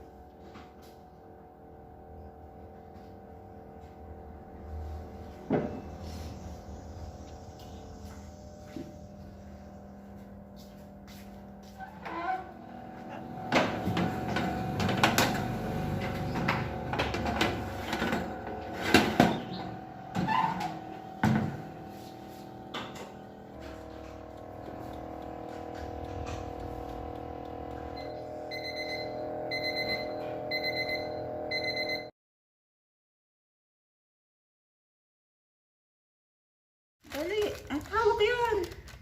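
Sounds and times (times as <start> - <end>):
steady hum: 0.0 - 32.0
appliance timer beeping: 20.9 - 32.1.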